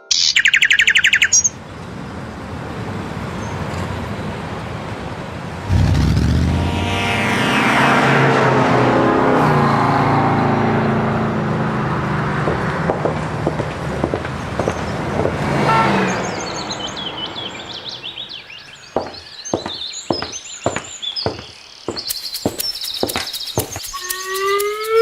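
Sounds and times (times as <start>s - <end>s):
birds chirping: 0.0s - 5.6s, 12.4s - 25.0s
sharp clicks: 22.0s - 25.0s.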